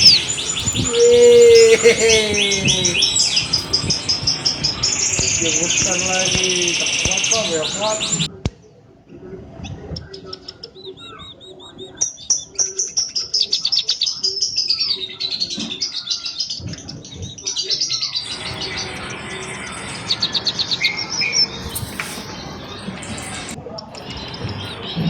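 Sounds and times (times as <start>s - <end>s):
flock of small birds chirping: 0.0s - 8.3s, 14.5s - 25.0s.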